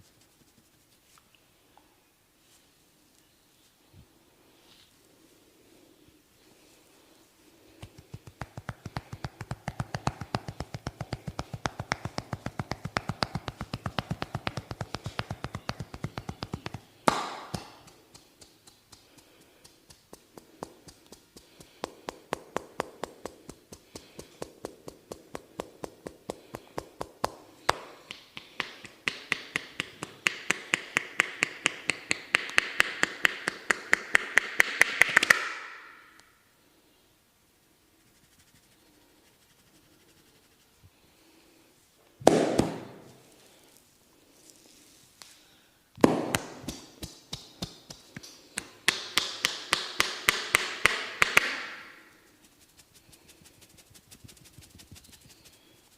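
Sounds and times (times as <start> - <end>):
percussive massage tapping: 7.8 - 35.9, 42.2 - 43.0, 46.0 - 52.0, 53.6 - 55.6.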